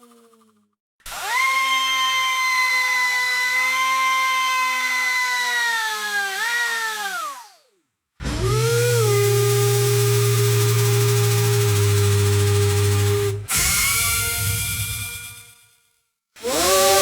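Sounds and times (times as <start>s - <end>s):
electric winch motor whining: 8.2s - 15.6s, 16.4s - 17.0s.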